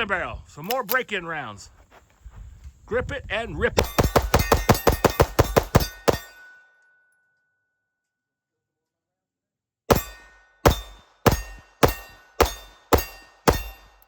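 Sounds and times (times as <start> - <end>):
pistol shots: 3.8 - 6.4, 9.9 - 14.0.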